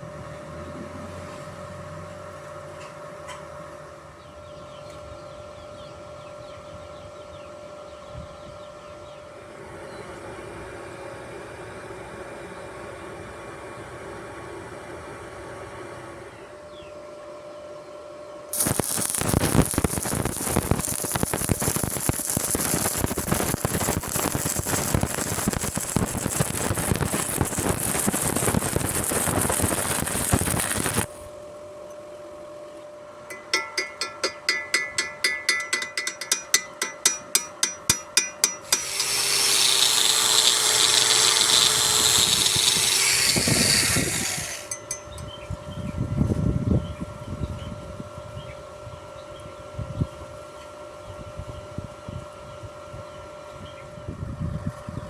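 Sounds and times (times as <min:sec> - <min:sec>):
welding arc crackling: 0:18.6 - 0:31.3, 0:38.6 - 0:45.0
steady hum: 0:18.6 - 0:46.2
metallic hammer taps: 0:33.3 - 0:38.7.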